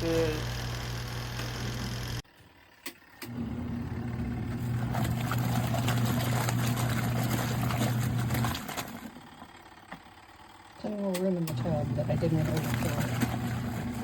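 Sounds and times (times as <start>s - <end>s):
washing machine motor humming: 0.0s - 14.0s
water churning in tub: 3.7s - 9.3s, 11.6s - 14.0s.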